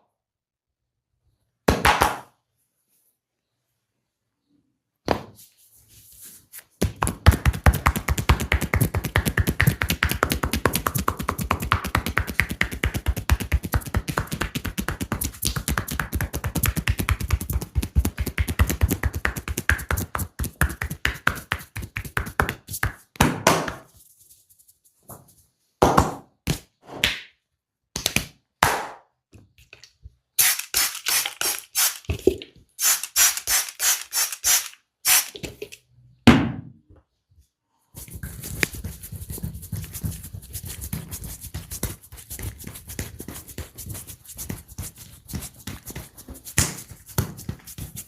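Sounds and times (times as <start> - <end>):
massage tapping and slaps on body: 1.7 - 2.4, 6.8 - 23.9, 44.5 - 48.0.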